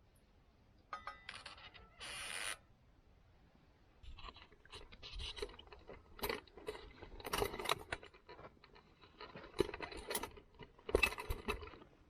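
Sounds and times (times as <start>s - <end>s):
small objects clicking and rustling: 4.0s - 12.0s.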